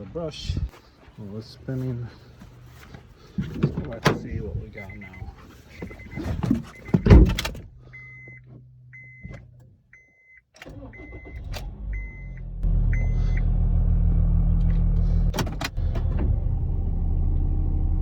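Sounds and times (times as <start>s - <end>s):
car engine starting and running: 1.6s - 18.0s
car warning chime beeping: 4.2s - 7.1s, 7.9s - 13.5s.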